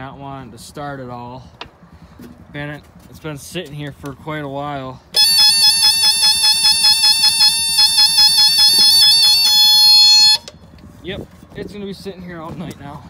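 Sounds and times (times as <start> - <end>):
electronic warning alarm beeping: 5.2 - 10.5.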